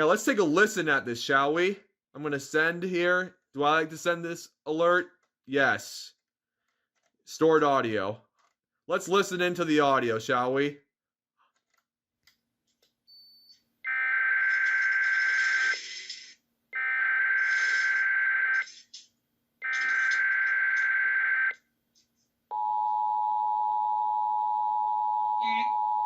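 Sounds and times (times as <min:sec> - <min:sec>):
warbling data tone bursts: 0:14.4 - 0:16.2, 0:17.2 - 0:18.7, 0:19.6 - 0:21.5.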